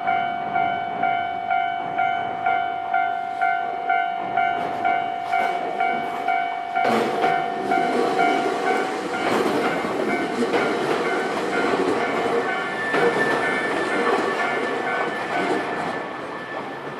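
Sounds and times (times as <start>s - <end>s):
electric train passing: 0.0s - 16.9s
level-crossing alarm ringing: 0.0s - 16.9s
train wheel knocks: 6.8s - 15.7s.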